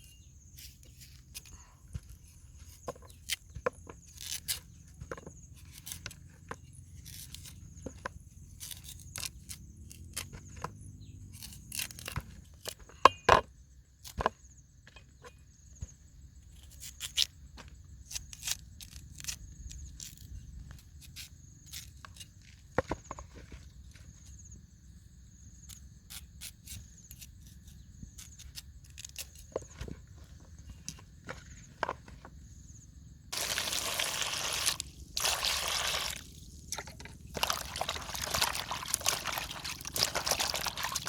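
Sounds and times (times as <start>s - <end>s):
hands handling food: 33.4s - 41.0s.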